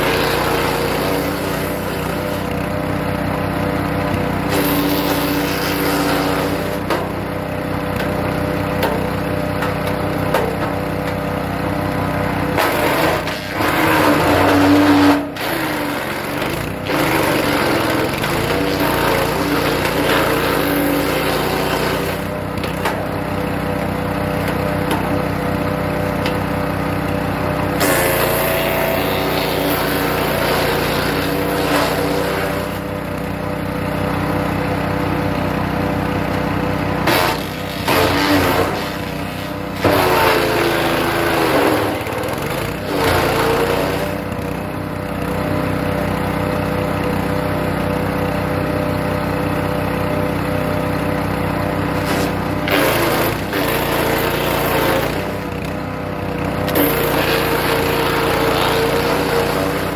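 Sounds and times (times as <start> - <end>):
wood chipper running: 0.0 - 59.9
crunching wood chipping: 37.0 - 41.9, 52.0 - 55.3.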